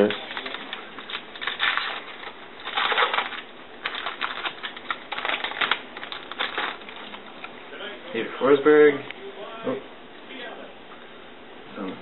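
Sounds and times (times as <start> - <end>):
trading cards rustling: 0.0 - 7.6.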